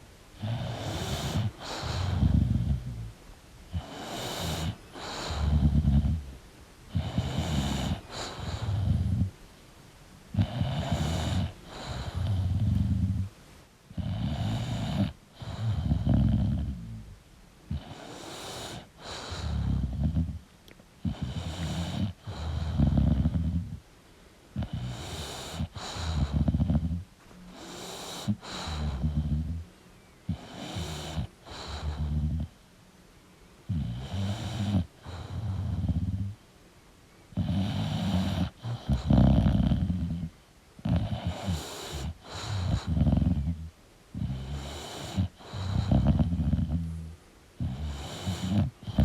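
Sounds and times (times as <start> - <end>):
dog snoring: 0.0 - 9.4, 10.3 - 13.3, 13.9 - 23.8, 24.6 - 29.6, 30.3 - 32.6, 33.6 - 36.4, 37.3 - 49.0.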